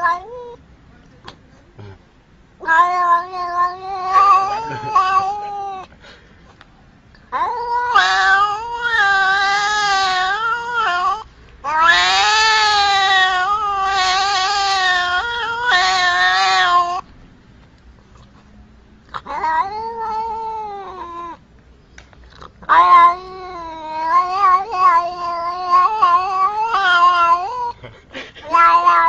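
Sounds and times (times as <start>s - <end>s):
angry cat yowling: 2.6s - 5.9s, 7.3s - 17.0s, 19.1s - 21.4s, 22.6s - 27.8s, 28.4s - 29.0s.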